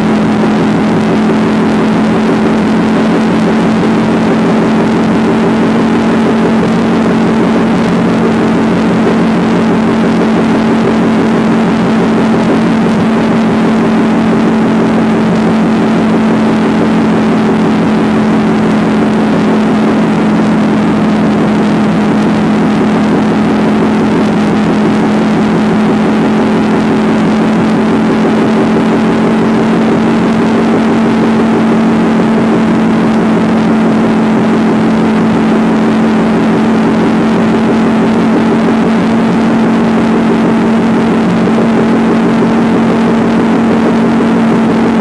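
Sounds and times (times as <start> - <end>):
constant rushing noise: 0.0 - 45.0
motorcycle engine cruising: 0.0 - 45.0.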